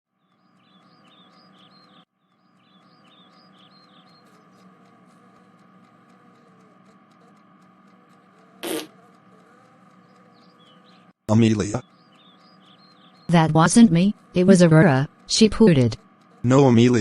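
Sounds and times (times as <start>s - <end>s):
birds chirping: 0.1s - 17.0s
faint steady hum: 0.4s - 17.0s
airy fart: 8.6s - 8.9s.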